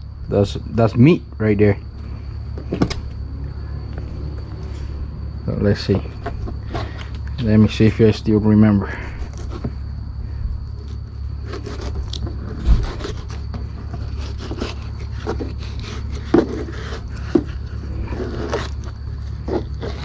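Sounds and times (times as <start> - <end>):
low hum: 0.0 - 20.0
knife scraping fish: 11.4 - 20.0.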